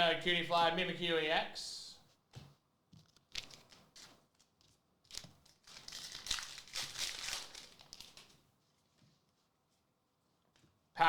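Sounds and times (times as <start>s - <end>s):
foil wrapper tearing and crinkling: 5.1s - 8.4s.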